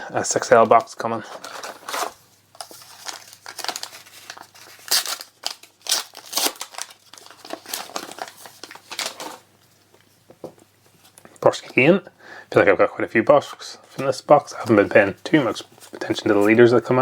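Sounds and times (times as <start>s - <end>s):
plastic foil wrapper crinkling: 0.4s - 9.5s, 14.6s - 17.0s.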